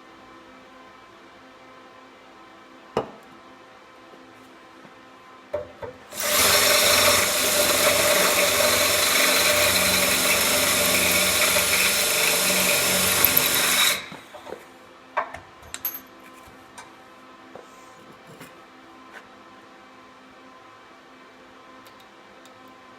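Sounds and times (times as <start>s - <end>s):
electric drill boring steel: 6.1s - 14.4s.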